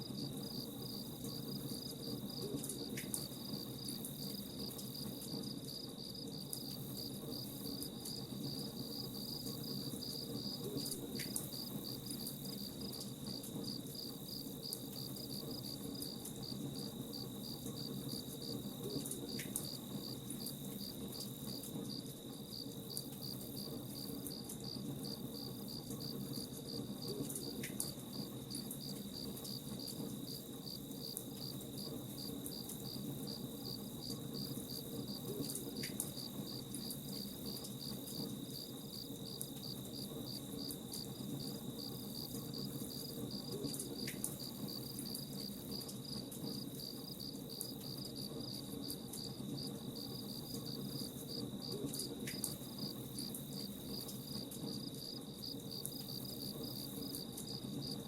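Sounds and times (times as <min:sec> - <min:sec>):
crickets chirping: 0:00.0 - 0:58.0.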